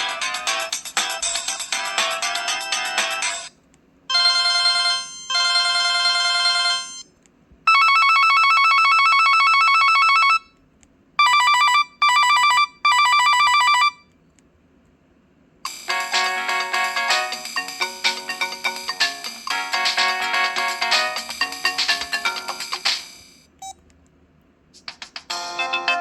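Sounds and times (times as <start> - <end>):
phone ringtones: 4.1 - 7.1, 7.7 - 10.4, 11.2 - 14.0.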